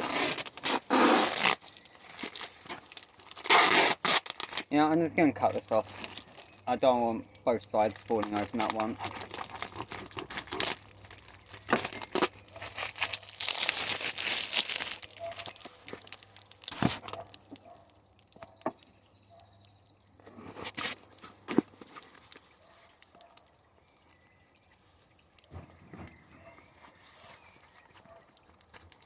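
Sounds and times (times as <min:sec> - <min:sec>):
cardboard and tape tearing: 0:00.0 - 0:07.0, 0:07.7 - 0:17.2, 0:20.2 - 0:22.4
knocks and rustles: 0:25.4 - 0:26.7.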